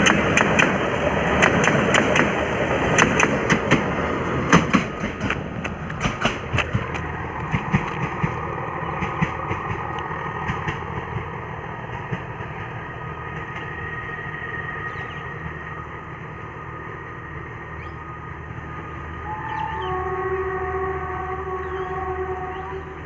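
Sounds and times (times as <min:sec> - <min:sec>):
diesel locomotive running: 0:00.0 - 0:23.0
sharp clicks and knocks: 0:04.5 - 0:08.4.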